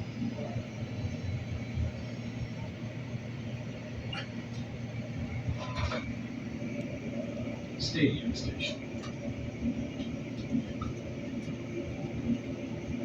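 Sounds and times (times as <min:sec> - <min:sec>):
train rumble and wheel noise: 0:00.0 - 0:13.0.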